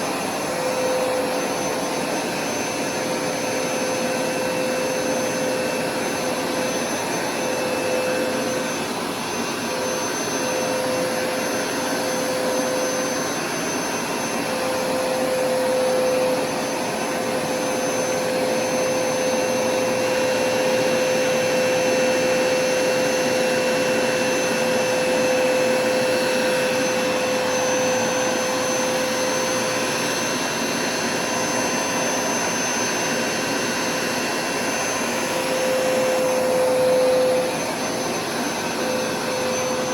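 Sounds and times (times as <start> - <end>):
carpet cleaning machine running: 0.0 - 39.9.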